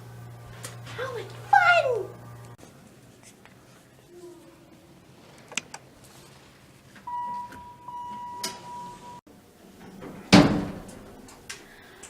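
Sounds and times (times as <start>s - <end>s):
high electronic beep: 7.1s - 9.2s.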